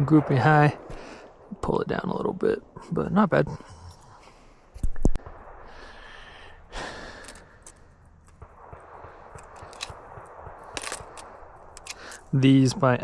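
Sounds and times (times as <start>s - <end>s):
small clicks of revolver handling: 10.7s - 12.3s.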